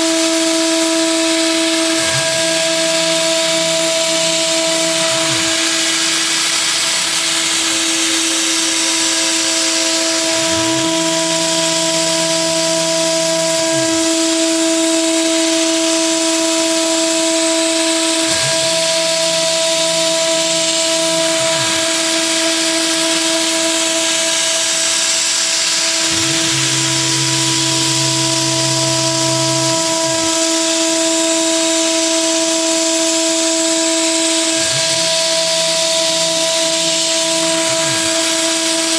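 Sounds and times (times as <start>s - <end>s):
router spindle whining: 0.0s - 38.9s
low motor hum: 25.8s - 33.5s.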